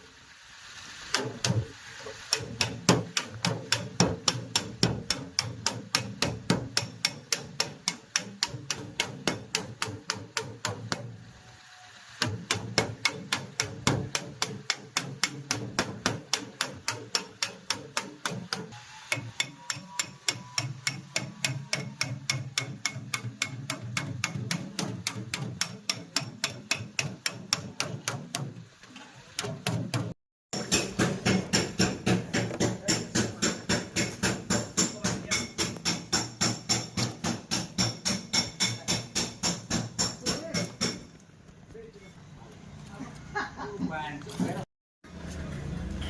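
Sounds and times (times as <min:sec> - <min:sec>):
hammer tapping rapidly: 0:02.3 - 0:11.1, 0:12.2 - 0:28.5, 0:29.6 - 0:41.1.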